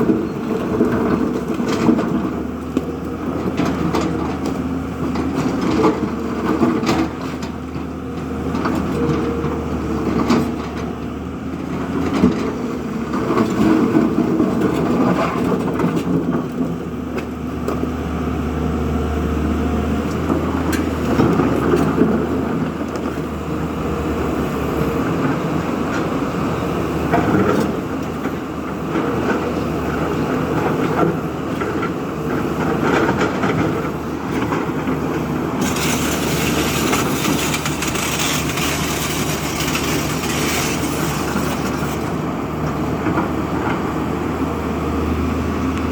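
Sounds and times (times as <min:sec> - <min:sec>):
diesel machinery engine drone: 0:00.0 - 0:45.9
metal clanks and knocks: 0:35.6 - 0:42.2.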